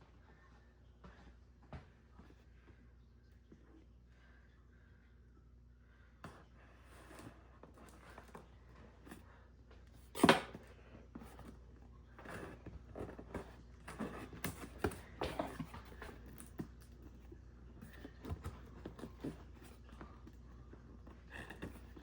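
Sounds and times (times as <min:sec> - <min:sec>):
cardboard rustling and scraping: 0:10.0 - 0:22.0.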